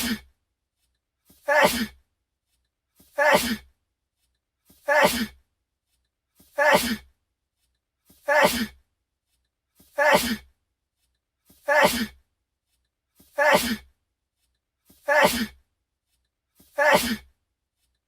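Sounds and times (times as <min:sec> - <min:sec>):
man sneezing: 0:00.0 - 0:00.2, 0:01.4 - 0:02.0, 0:03.2 - 0:03.6, 0:04.9 - 0:05.4, 0:06.6 - 0:07.0, 0:08.2 - 0:08.8, 0:10.0 - 0:10.5, 0:11.7 - 0:12.2, 0:13.4 - 0:13.9, 0:15.1 - 0:15.6, 0:16.8 - 0:17.3.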